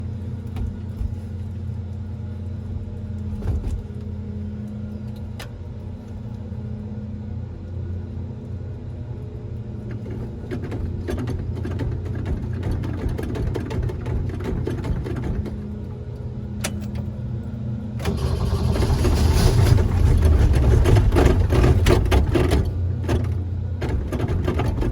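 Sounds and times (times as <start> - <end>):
car engine hard start: 18.0 - 22.7.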